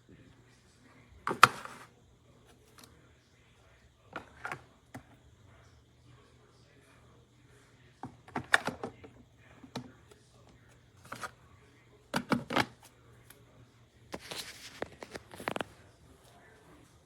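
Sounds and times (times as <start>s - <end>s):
faint low hum: 0.0s - 17.0s.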